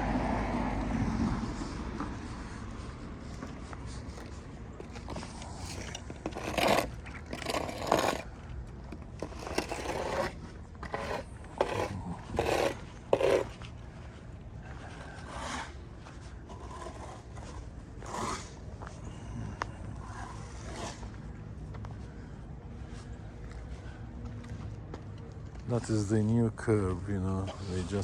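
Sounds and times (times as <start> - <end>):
irregular scrapes: 1.2 - 19.1, 20.0 - 21.4.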